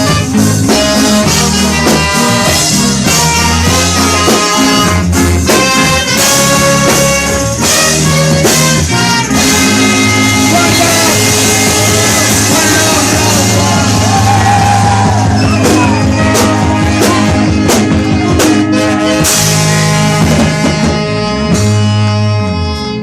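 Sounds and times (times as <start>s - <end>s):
sharp drum hits: 0.0s - 8.8s
sustained bass notes: 0.0s - 23.0s.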